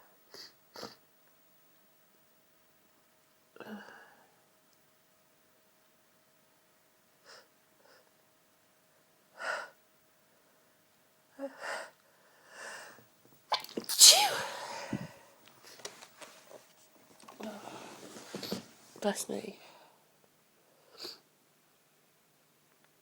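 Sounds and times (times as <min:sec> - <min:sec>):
person sneezing: 0:13.5 - 0:15.2.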